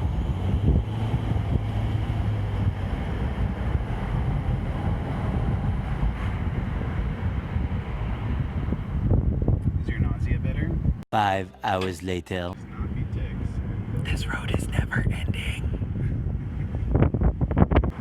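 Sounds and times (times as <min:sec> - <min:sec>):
car driving on road: 0:00.0 - 0:09.6.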